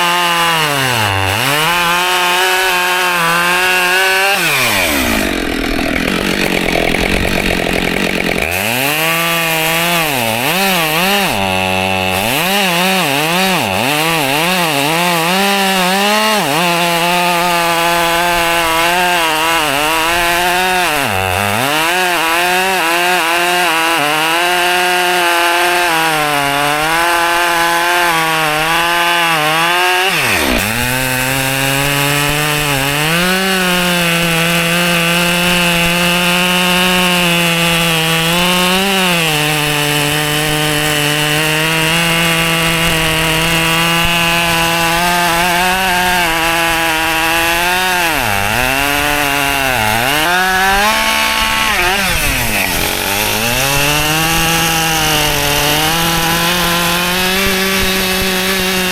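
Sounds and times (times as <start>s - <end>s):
chainsaw cutting logs: 0.0s - 58.9s.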